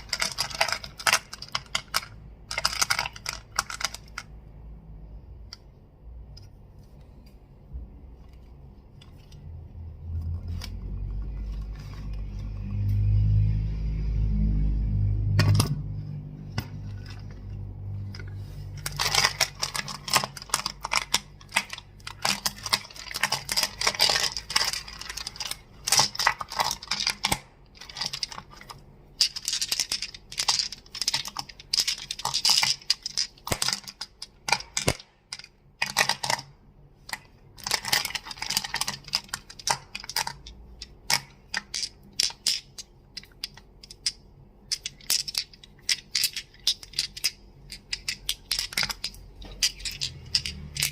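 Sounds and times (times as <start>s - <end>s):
crystals clicking together: 37.6s - 50.9s.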